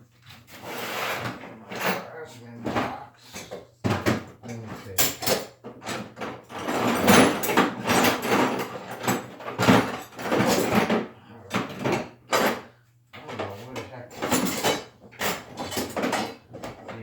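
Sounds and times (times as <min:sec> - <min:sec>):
tools clattering in toolbox: 0:04.9 - 0:12.7, 0:13.3 - 0:17.0.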